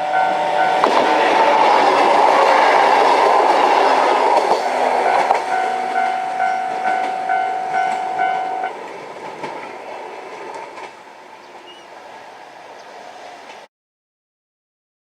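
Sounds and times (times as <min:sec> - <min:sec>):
level crossing bell ringing: 0:00.0 - 0:00.8, 0:04.5 - 0:08.8
electric train running: 0:00.0 - 0:13.7.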